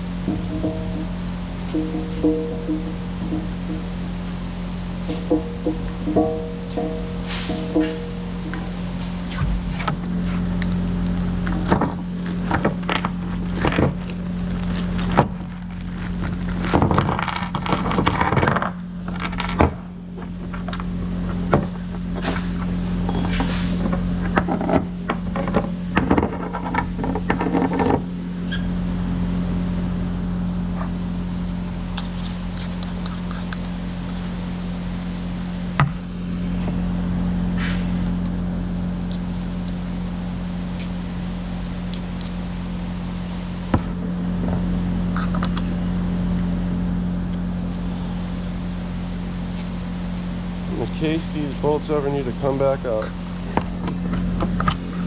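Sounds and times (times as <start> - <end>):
steady low hum: 0.0 - 55.0
metal bolts clinking and scraping: 0.1 - 4.4, 5.0 - 10.4, 11.4 - 19.6, 20.2 - 28.6.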